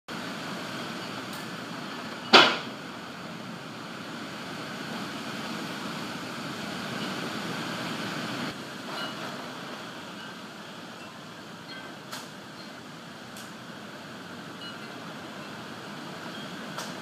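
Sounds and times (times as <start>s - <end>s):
rain: 0.1s - 17.0s
wind: 0.1s - 17.0s.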